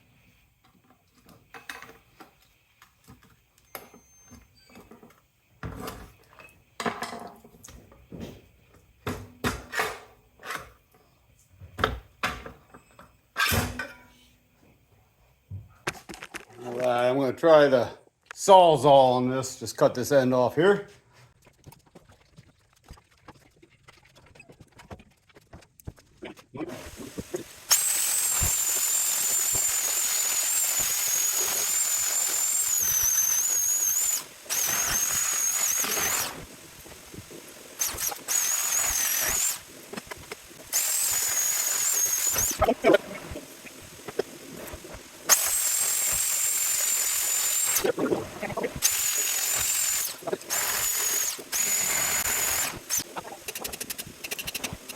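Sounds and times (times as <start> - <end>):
reciprocating saw cutting metal: 26.8 - 37.2, 37.8 - 54.9.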